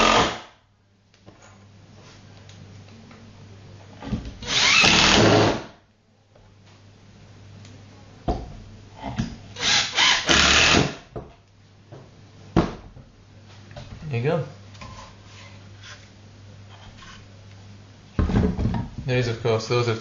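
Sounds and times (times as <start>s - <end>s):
power drill driving screws: 0.0s - 0.5s, 4.4s - 5.7s, 9.6s - 11.0s.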